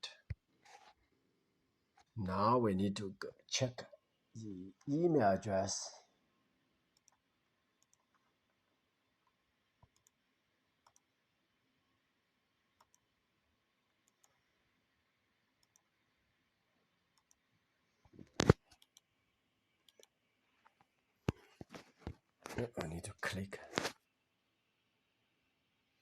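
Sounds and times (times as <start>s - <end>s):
faint sparse clicks: 10.8s - 11.1s, 14.0s - 14.4s.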